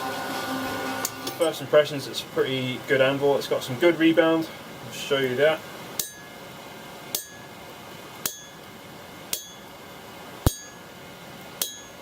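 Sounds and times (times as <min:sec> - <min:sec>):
hammer striking anvil: 0:06.0 - 0:06.4, 0:07.1 - 0:07.5, 0:08.2 - 0:08.6, 0:09.3 - 0:09.7, 0:10.4 - 0:10.9, 0:11.6 - 0:12.0.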